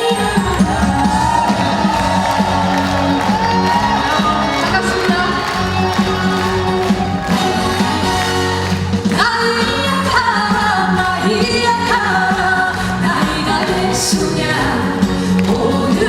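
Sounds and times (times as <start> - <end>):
live band playing: 0.0 - 16.0
person singing: 9.1 - 16.0.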